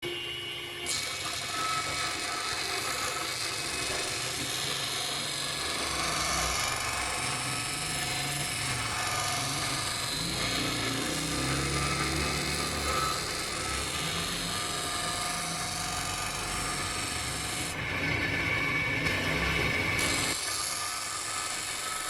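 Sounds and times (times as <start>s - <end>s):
electric grinder running: 0.8s - 22.0s.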